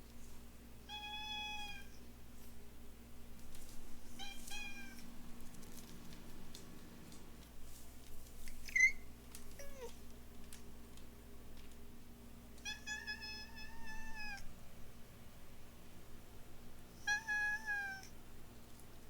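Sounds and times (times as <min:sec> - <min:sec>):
cats chirping and meowing: 0:08.6 - 0:09.0, 0:12.7 - 0:14.4.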